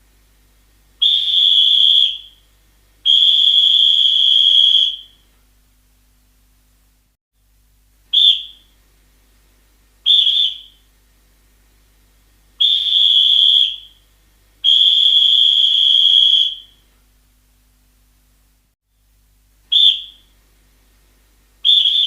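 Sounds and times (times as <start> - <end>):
referee's whistle blasts: 10.1 - 10.8, 21.7 - 22.0.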